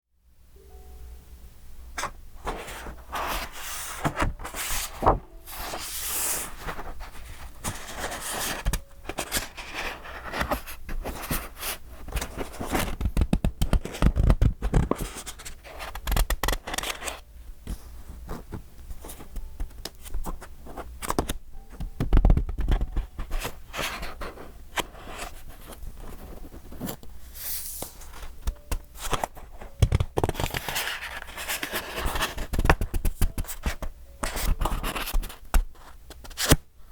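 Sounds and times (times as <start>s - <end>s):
paper pages rustling: 2.0s - 36.6s
book bumping: 12.7s - 15.0s, 21.0s - 23.3s.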